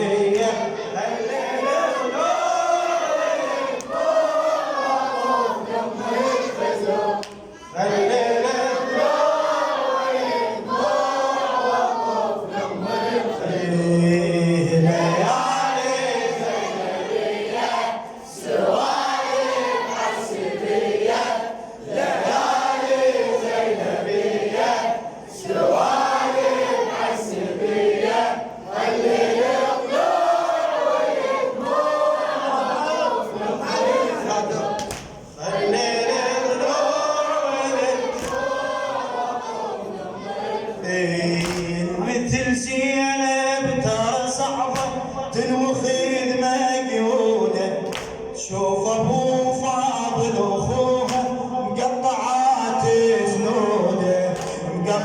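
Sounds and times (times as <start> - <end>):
group of voices chanting: 0.0 - 42.4.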